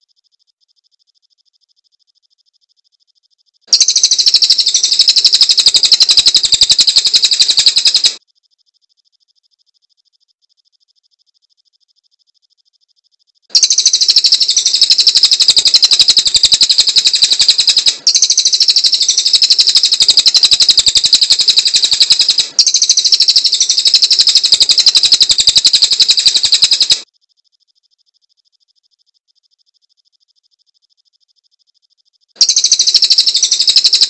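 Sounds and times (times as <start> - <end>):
songbird rapid high trill: 3.7 - 8.2, 13.5 - 27.1, 32.4 - 34.0.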